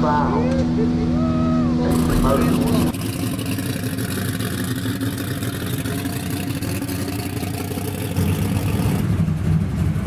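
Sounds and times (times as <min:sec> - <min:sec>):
race car engines running: 0:00.0 - 0:10.0.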